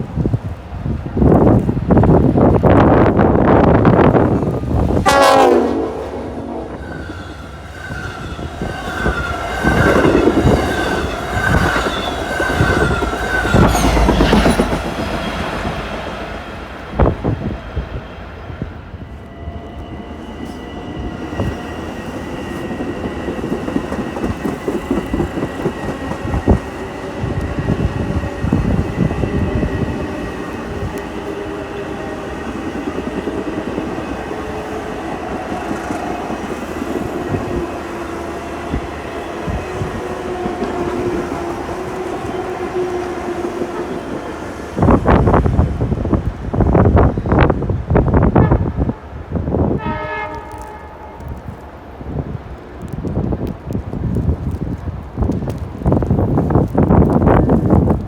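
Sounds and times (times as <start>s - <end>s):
train passing: 0.0s - 58.0s
train wheels clicking over rail joints: 6.9s - 16.0s, 21.3s - 45.5s.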